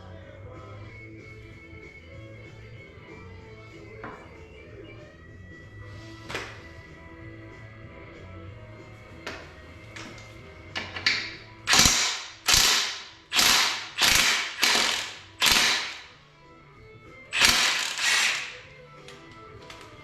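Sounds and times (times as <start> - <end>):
ratchet wrench clicking: 11.7 - 16.1, 17.3 - 18.6.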